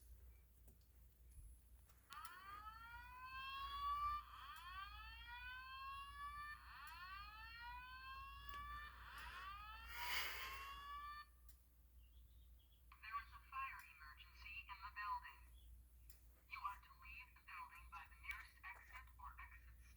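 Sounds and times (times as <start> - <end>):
fire alarm whoop tone: 2.1 - 11.4.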